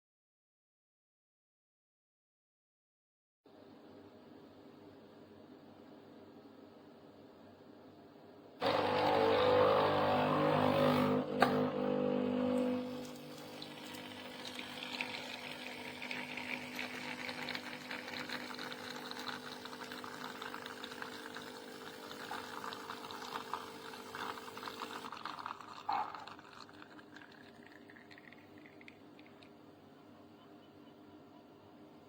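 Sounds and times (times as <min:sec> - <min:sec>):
coffee machine pump humming: 0:08.6 - 0:29.6
coffee pouring into cup: 0:08.6 - 0:29.6.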